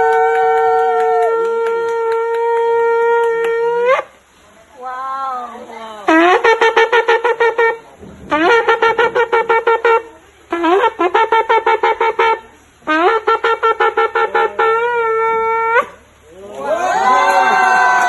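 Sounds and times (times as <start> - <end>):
shofar blowing staccato notes: 0.0 - 4.1, 6.1 - 16.0.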